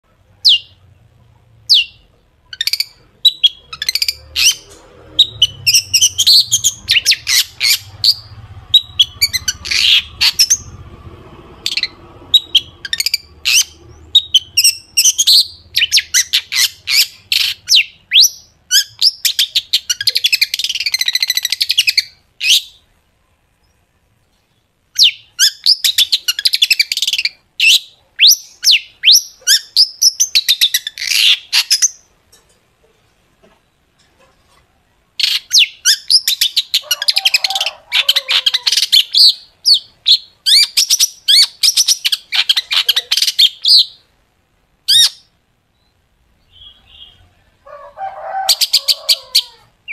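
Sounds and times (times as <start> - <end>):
bird singing in chattering bursts: 1.7 - 10.8, 11.6 - 22.9, 24.9 - 32.1, 35.2 - 44.1, 44.8 - 47.3.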